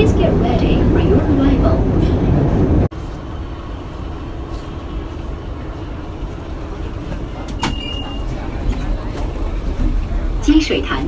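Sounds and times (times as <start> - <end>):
subway train rumbling: 0.0 - 11.0.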